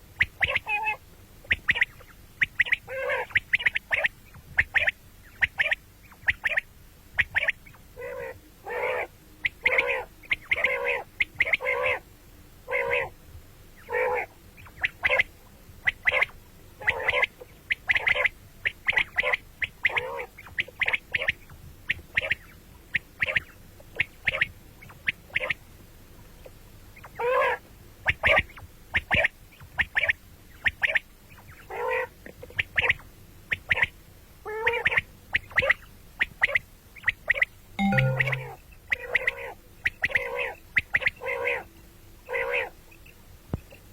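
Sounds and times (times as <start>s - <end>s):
quails calling: 0.2s - 6.6s, 7.2s - 12.0s, 12.7s - 13.1s, 13.9s - 21.4s.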